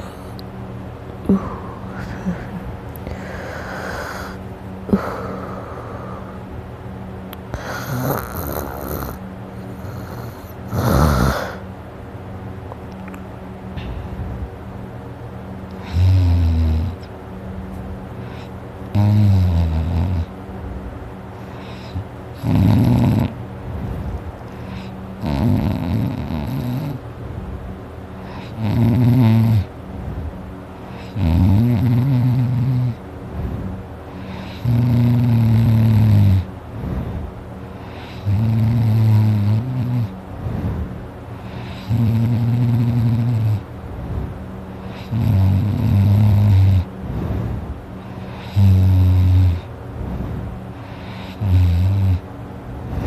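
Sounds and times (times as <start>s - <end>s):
quiet breathing: 0.0s - 0.5s, 1.2s - 6.7s, 21.2s - 22.4s, 29.6s - 53.0s
person snoring loudly: 7.5s - 9.2s, 9.8s - 11.6s, 15.8s - 17.0s, 18.3s - 20.3s, 21.6s - 23.4s, 24.7s - 27.0s, 28.3s - 29.7s, 31.0s - 33.0s, 34.3s - 36.5s, 38.0s - 40.1s, 41.6s - 43.6s, 44.9s - 46.9s, 48.2s - 49.7s, 51.0s - 52.2s.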